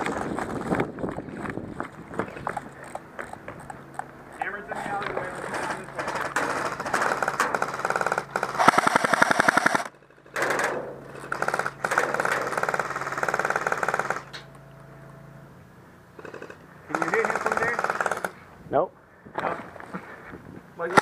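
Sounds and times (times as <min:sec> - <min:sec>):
airsoft guns firing bursts: 0:06.1 - 0:14.3, 0:16.2 - 0:18.4.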